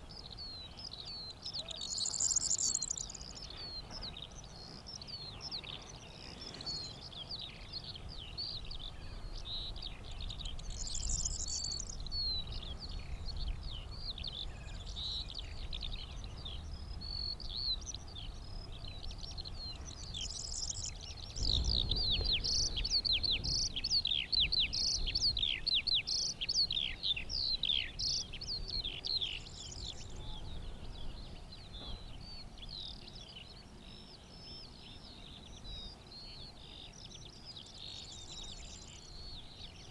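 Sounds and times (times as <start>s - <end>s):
songbirds twittering: 0.0s - 39.9s
wind rumble on microphone: 6.6s - 34.0s.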